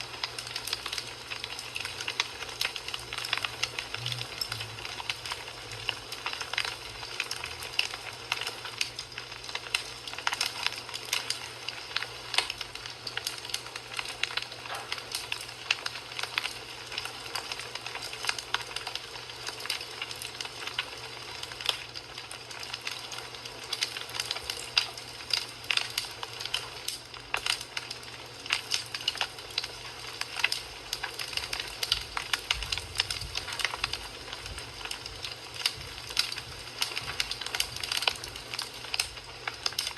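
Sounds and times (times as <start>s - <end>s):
fire crackling and popping: 0.0s - 39.9s.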